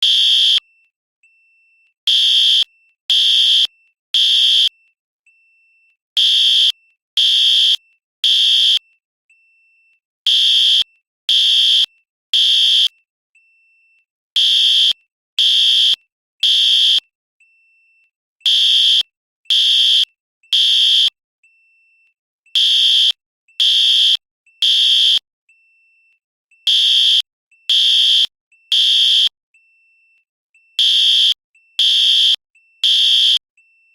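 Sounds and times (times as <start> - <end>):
fire alarm blasts: 0.0 - 0.6, 2.1 - 4.7, 6.2 - 8.8, 10.3 - 12.9, 14.4 - 17.0, 18.5 - 21.1, 22.6 - 25.2, 26.7 - 29.3, 30.8 - 33.4.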